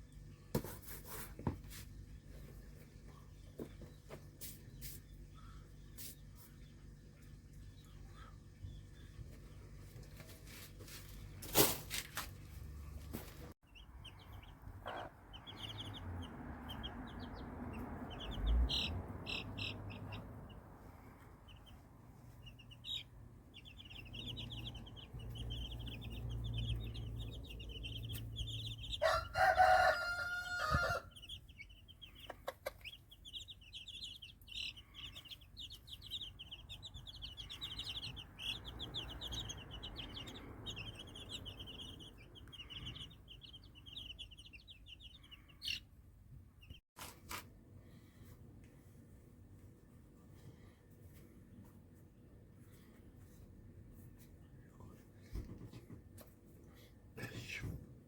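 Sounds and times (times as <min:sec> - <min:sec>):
chicks peeping: 0:00.0 - 0:11.7, 0:12.5 - 0:46.8
rooster crowing: 0:28.9 - 0:31.2.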